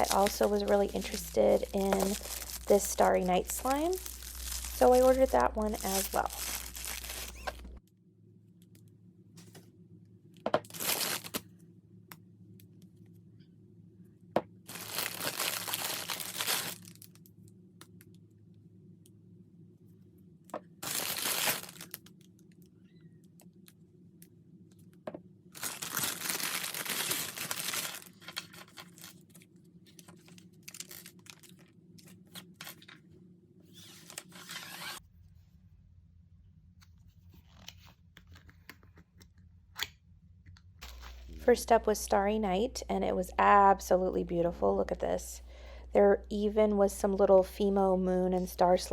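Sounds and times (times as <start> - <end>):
packaging crackling: 0.0 - 7.8, 10.6 - 11.4, 14.7 - 17.2, 20.8 - 22.2, 25.6 - 29.4, 30.0 - 32.9
packaging tearing: 0.0 - 7.8, 10.6 - 11.4, 14.7 - 17.2, 20.8 - 22.1, 25.6 - 29.4, 30.2 - 32.9, 33.8 - 35.0.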